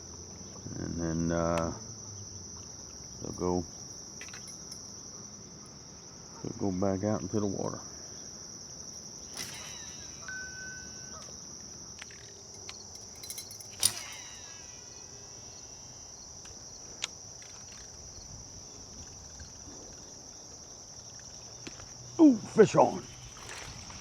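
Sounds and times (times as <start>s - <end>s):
high-pitched insect chorus: 0.0s - 24.0s
sharp clicks: 9.2s - 15.0s.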